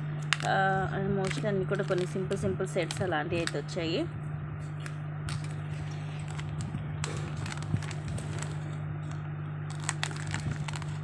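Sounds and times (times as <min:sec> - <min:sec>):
low hum: 0:00.0 - 0:11.0
packaging rustling: 0:01.2 - 0:03.6, 0:04.8 - 0:11.0.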